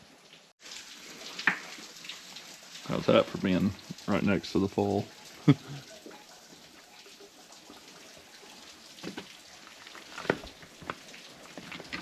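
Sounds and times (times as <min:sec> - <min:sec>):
faint trickling water hiss: 0:00.0 - 0:12.0
water drops splashing on rock: 0:01.4 - 0:01.8.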